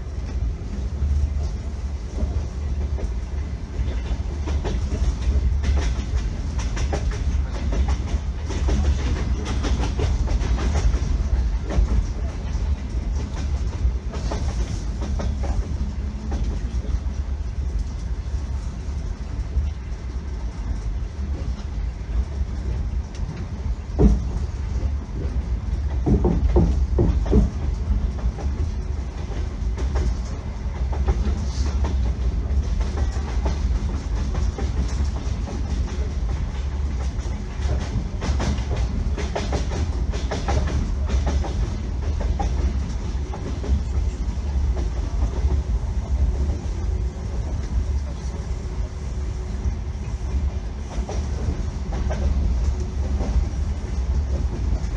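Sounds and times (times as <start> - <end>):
train carriage rumble: 0.0 - 54.9
wheels clacking over rail joints: 23.2 - 49.1.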